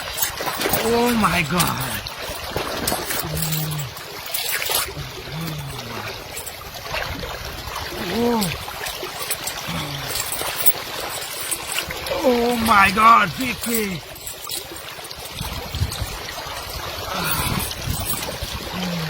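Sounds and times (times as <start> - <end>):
water trickling and splashing: 0.0 - 19.0
short voice sounds: 5.0 - 6.2, 8.0 - 8.6, 12.1 - 14.0, 18.6 - 19.0.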